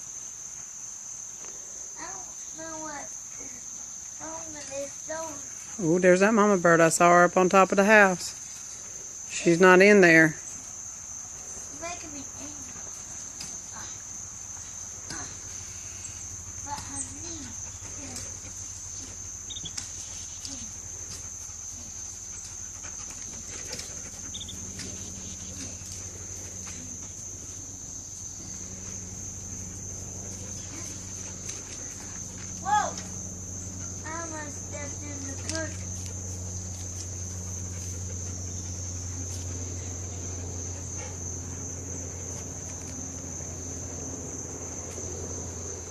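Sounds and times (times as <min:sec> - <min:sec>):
insects trilling: 0:00.0 - 0:45.9
steady low hum: 0:00.0 - 0:45.9
high chirps: 0:24.3 - 0:24.6.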